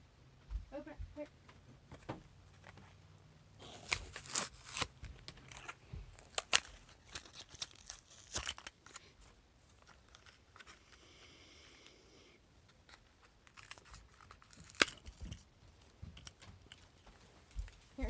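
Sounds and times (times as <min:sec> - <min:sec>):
toy package tearing and crinkling: 0:03.6 - 0:11.2, 0:12.7 - 0:15.5.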